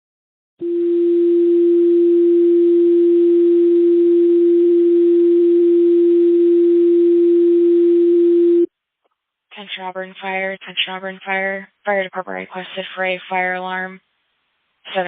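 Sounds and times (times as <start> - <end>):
faint radio hiss: 11.7 - 15.0.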